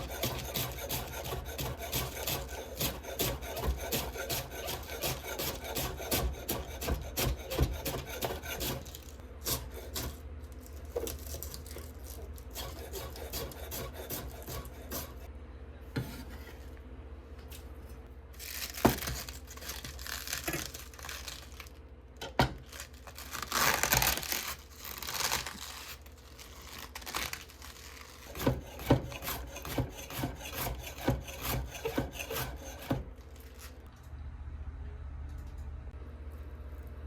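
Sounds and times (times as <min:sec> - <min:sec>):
utensils scraping and rubbing: 0:00.0 - 0:10.2, 0:12.1 - 0:15.3, 0:26.4 - 0:33.8.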